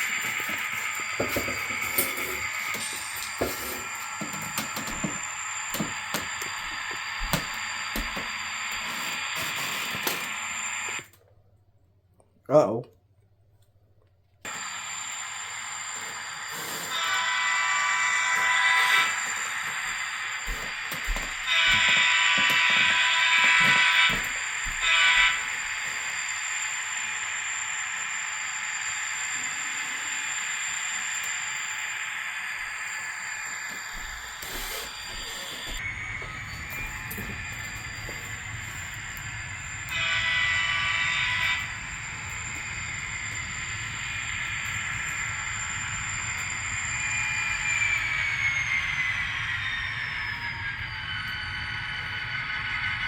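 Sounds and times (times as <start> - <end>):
model train motor whine: 0.0 - 11.2, 14.5 - 53.0
model train horn through speaker: 16.6 - 19.8, 21.2 - 26.1, 36.8 - 43.0.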